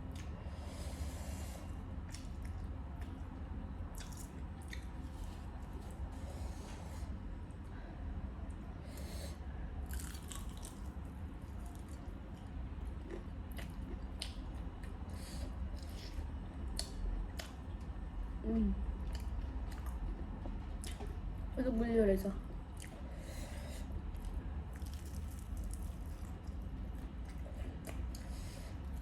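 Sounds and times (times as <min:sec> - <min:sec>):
person chewing with mouth smacks: 0:13.0 - 0:15.0, 0:15.8 - 0:17.8, 0:19.0 - 0:21.2, 0:24.1 - 0:29.0.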